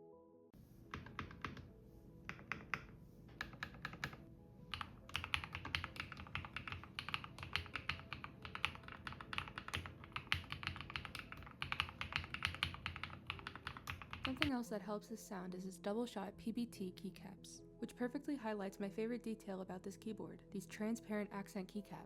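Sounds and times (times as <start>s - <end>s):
mechanical keyboard typing: 0.9s - 14.6s.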